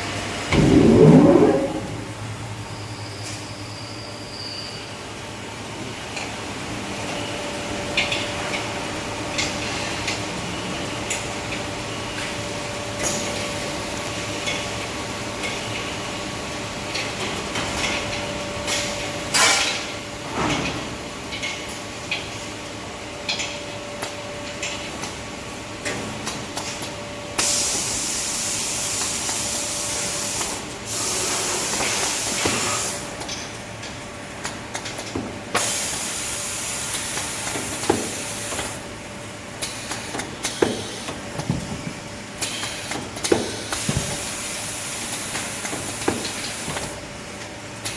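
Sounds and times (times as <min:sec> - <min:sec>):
machine hum: 0:00.4 - 0:02.7
hiss: 0:27.4 - 0:33.1, 0:35.6 - 0:38.8.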